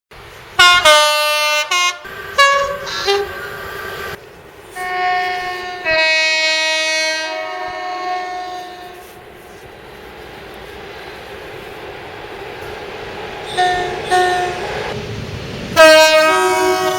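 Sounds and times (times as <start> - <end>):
train two-tone horn blasts: 0.6 - 3.4, 4.7 - 9.6, 13.4 - 15.0, 15.8 - 16.9.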